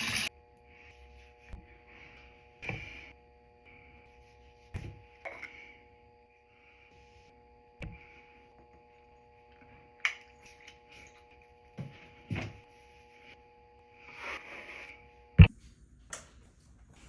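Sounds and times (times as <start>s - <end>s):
steady hum: 0.0s - 17.0s
faint breathing: 5.3s - 8.6s.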